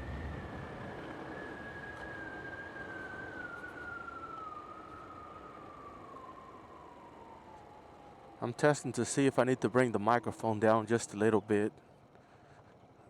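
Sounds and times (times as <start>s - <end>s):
wind and road rush: 0.0s - 9.0s
thin whistling tone: 1.1s - 6.7s.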